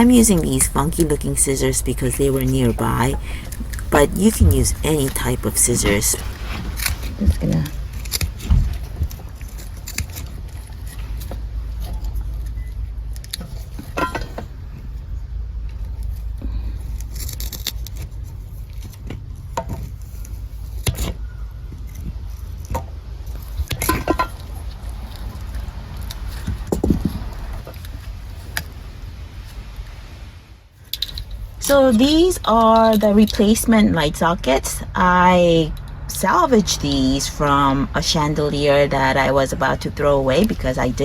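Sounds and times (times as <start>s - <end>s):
wires being handled: 0.0s - 14.8s
steady low rumble: 0.0s - 20.8s.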